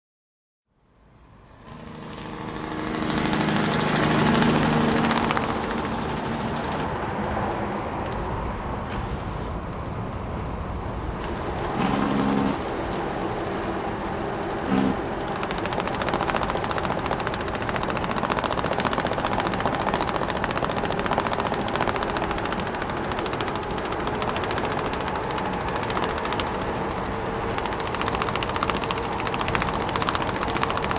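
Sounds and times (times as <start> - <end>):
truck engine: 1.2 - 30.9
cargo straps flapping: 11.2 - 30.9.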